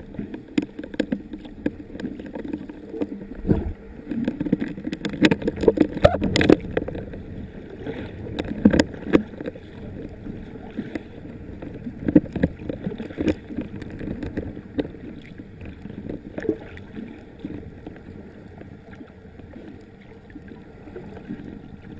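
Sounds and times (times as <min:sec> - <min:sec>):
water sloshing and bubbling: 0:00.0 - 0:21.9
low steady rumble: 0:01.3 - 0:12.1.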